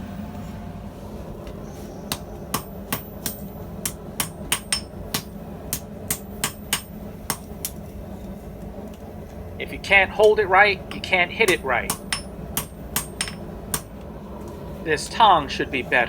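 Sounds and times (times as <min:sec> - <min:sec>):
hammer striking steel on anvil: 0:02.1 - 0:07.9, 0:10.1 - 0:14.0.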